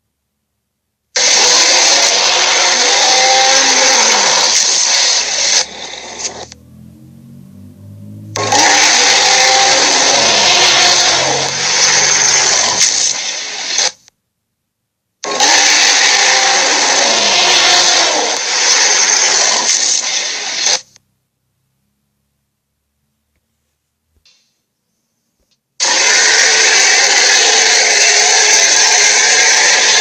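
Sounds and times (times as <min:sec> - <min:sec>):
rasping monster cry: 0:01.2 - 0:06.6, 0:08.3 - 0:13.2, 0:15.2 - 0:20.8, 0:25.8 - 0:30.0.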